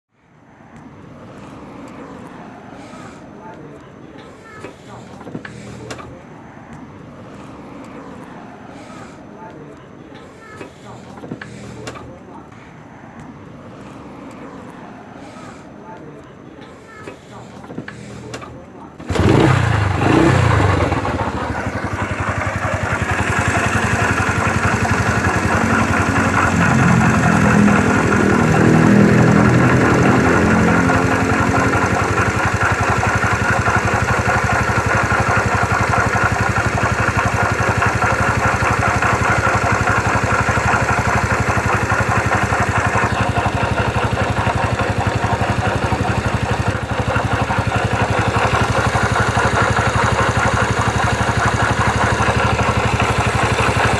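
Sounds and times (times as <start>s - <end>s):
motorcycle engine idling: 19.0s - 53.9s.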